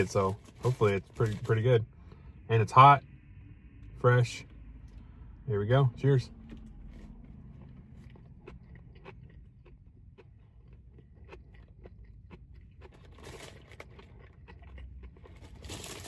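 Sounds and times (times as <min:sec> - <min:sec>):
person chewing food: 0:06.4 - 0:16.0.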